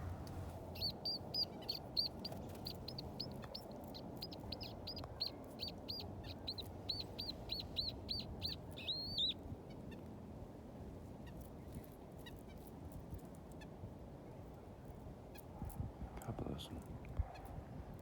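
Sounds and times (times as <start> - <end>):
small bird calling: 0.0 - 9.9
steady low hiss: 0.0 - 14.3.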